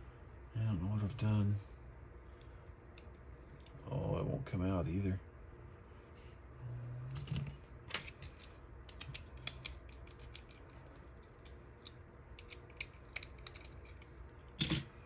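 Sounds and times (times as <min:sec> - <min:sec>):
lock tools clicking in lock: 0:07.3 - 0:10.7, 0:12.4 - 0:14.9.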